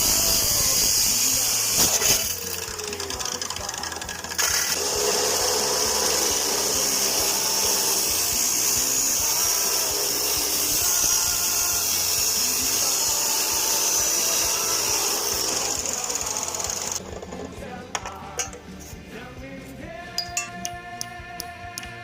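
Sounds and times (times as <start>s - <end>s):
angle grinder cutting metal: 0.0s - 17.3s.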